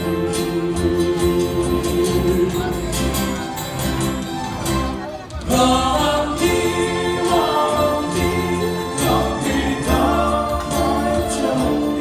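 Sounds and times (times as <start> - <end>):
song with singing over beat: 5.4 - 12.0.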